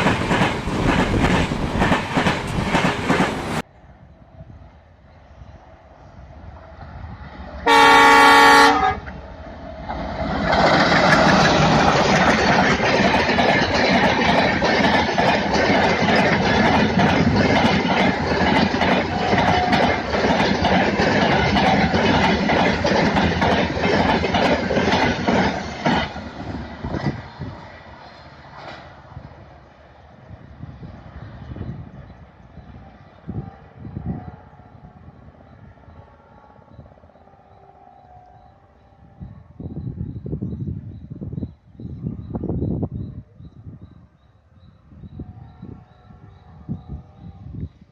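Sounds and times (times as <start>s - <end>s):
locomotive engine: 0.0s - 3.6s
train wheels clacking over rail joints: 0.0s - 3.6s, 9.9s - 27.6s
locomotive horn blast: 7.6s - 9.1s.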